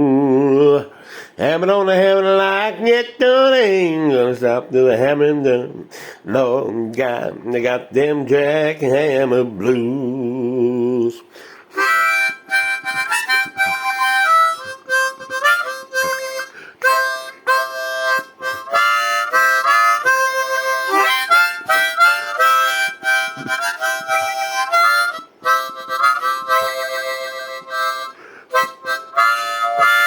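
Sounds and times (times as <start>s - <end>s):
blues harmonica: 11.4s - 30.0s.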